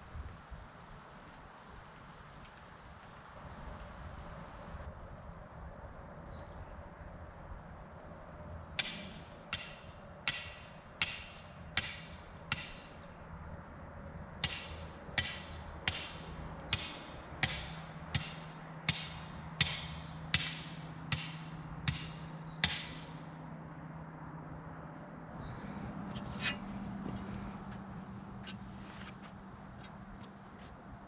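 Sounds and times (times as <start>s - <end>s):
hammer striking fence stake: 8.8s - 13.0s, 14.4s - 23.2s, 26.1s - 27.3s.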